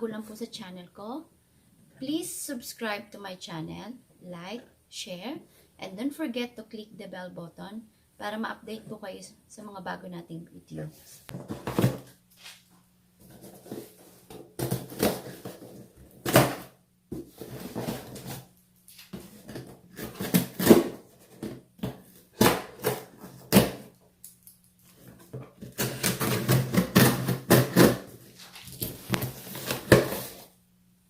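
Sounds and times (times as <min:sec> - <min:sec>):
cardboard box knocks and scrapes: 0:11.3 - 0:12.1, 0:13.3 - 0:18.4
cardboard rustling and tearing: 0:17.3 - 0:21.6, 0:25.1 - 0:30.5.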